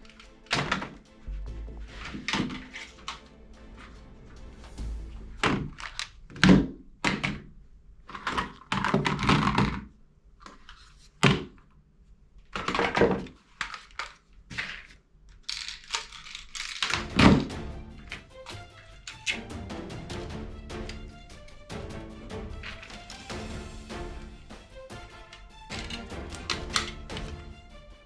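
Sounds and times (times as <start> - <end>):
toy guns knocking and clacking: 15.4 - 17.0.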